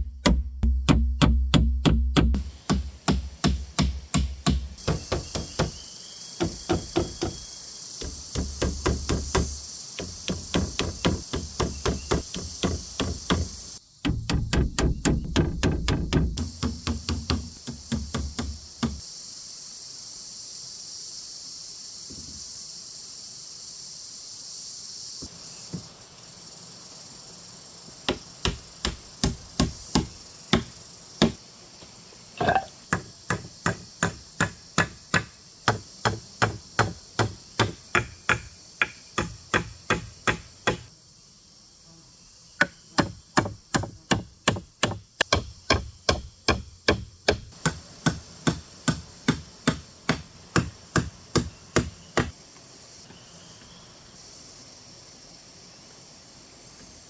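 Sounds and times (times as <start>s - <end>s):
hand tool striking wood: 0.0s - 5.8s, 6.4s - 19.0s, 28.1s - 31.4s, 32.4s - 40.9s, 42.6s - 52.4s
high steady hiss: 2.2s - 57.0s.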